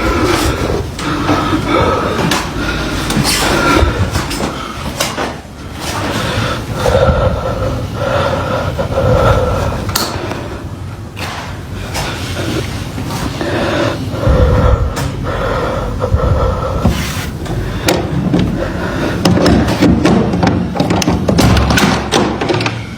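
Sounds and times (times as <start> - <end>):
continuous rumbling: 0.0 - 22.9
loud bangs and knocks: 19.2 - 22.8.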